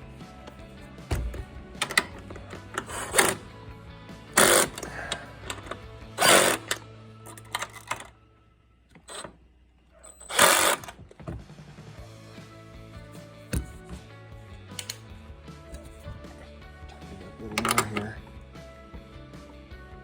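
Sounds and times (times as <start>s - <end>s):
cordless power driver spinning: 0.0s - 7.9s, 10.0s - 11.2s.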